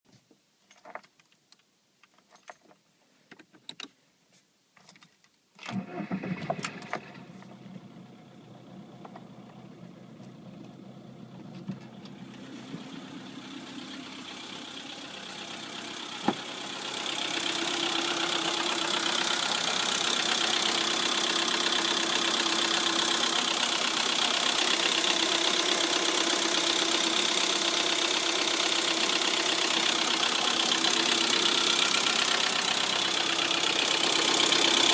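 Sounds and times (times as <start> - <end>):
car engine starting and idling: 5.6 - 34.9.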